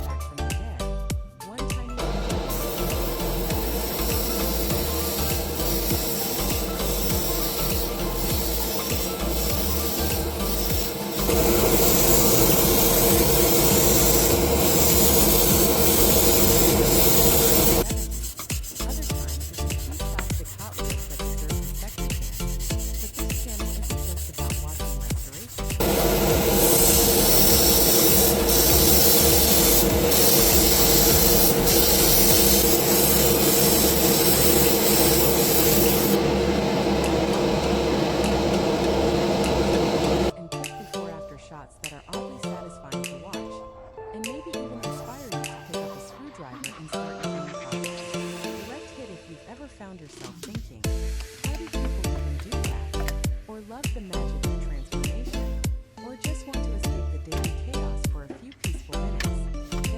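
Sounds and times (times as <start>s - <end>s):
small power tool humming: 2.0s - 40.3s.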